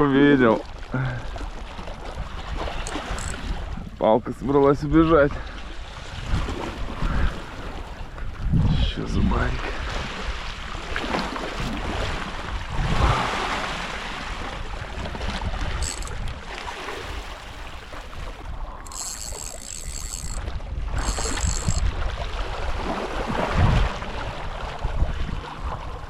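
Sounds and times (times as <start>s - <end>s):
sea wash: 0.0s - 26.0s
wind buffeting microphone: 1.9s - 10.9s, 11.5s - 26.0s
high buzzing: 2.8s - 3.4s, 15.8s - 16.2s, 18.8s - 20.4s, 21.0s - 21.8s.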